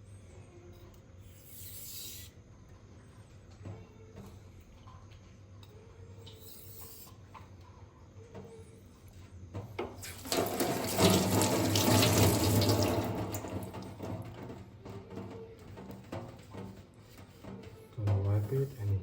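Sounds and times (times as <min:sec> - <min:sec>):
water running from tap: 0:10.0 - 0:14.6.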